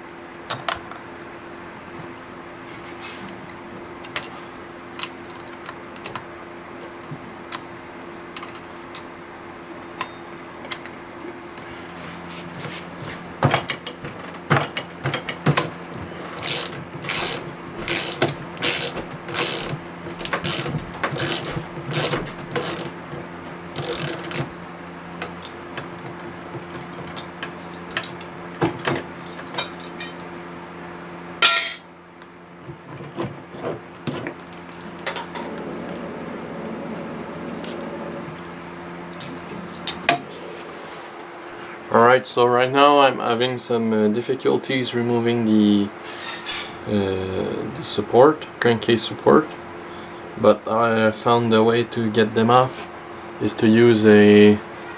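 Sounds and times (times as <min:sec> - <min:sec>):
ratchet wrench clicking: 0:16.4 - 0:23.0, 0:23.8 - 0:24.5.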